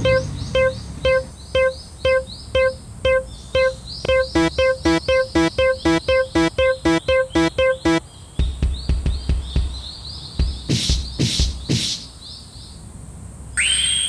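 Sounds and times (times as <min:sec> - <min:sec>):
level-crossing alarm ringing: 0:00.0 - 0:08.0.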